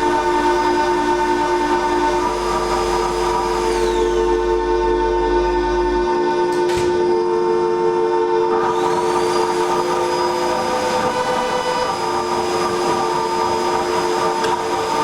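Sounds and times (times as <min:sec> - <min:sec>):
vacuum cleaner whining tones: 0:00.0 - 0:15.0.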